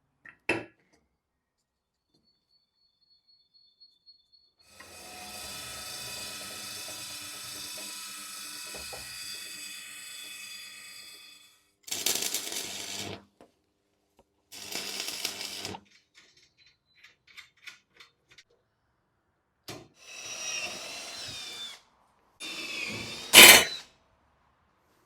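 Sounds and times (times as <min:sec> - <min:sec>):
electric drill running: 0:22.4 - 0:23.8.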